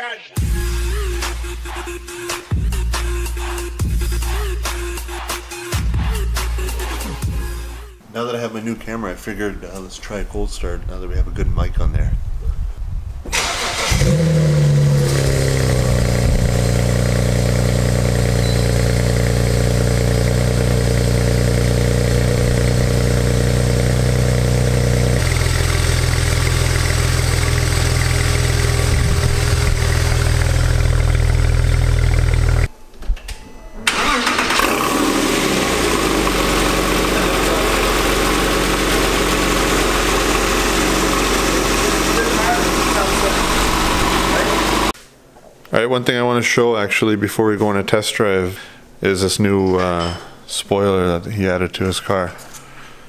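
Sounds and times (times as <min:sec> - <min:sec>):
car engine starting and idling: 0:13.3 - 0:32.7, 0:33.8 - 0:45.0.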